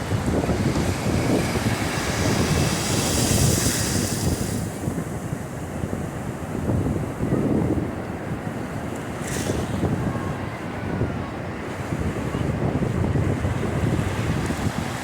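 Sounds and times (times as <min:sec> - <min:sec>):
ocean surf: 0:00.0 - 0:15.0
wind buffeting microphone: 0:00.0 - 0:15.0.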